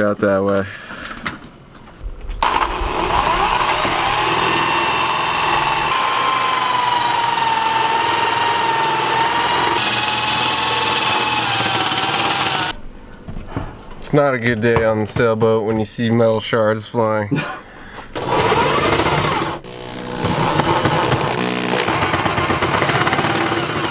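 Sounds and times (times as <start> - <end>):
power drill cutting metal: 2.4 - 12.8, 18.2 - 23.9.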